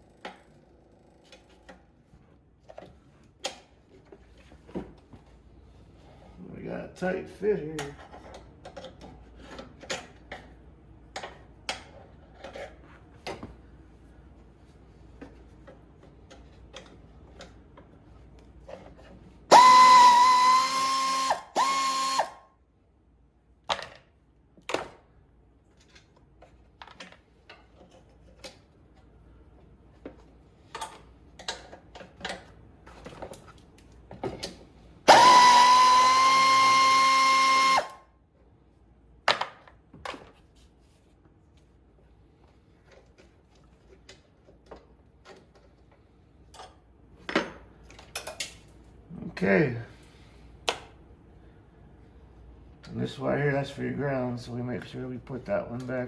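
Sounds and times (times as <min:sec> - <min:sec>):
cordless power tool whine: 0:19.5 - 0:22.4, 0:35.1 - 0:38.0.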